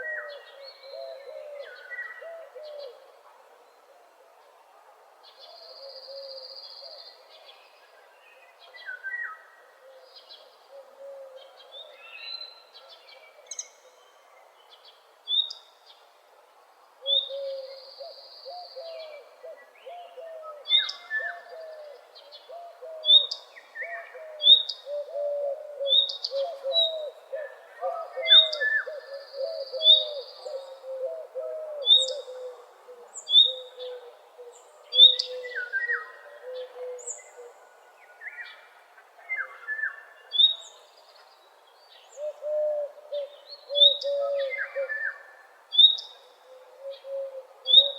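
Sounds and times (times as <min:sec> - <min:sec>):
birds singing: 0:17.0 - 0:47.9.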